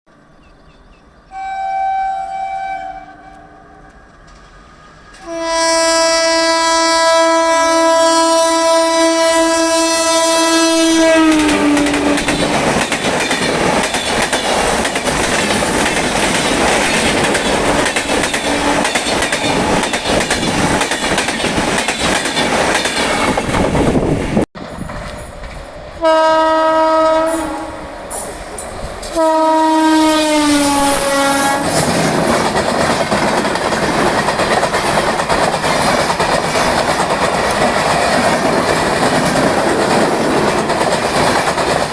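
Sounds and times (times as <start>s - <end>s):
train horn blasts: 1.3s - 4.1s, 5.2s - 12.2s, 26.0s - 28.3s, 29.1s - 31.9s
train rushing and clattering past: 9.1s - 41.9s.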